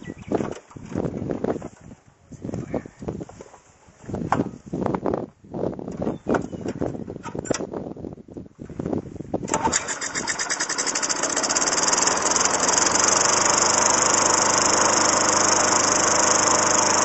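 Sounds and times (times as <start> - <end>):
lawn mower engine starting: 9.4 - 17.0.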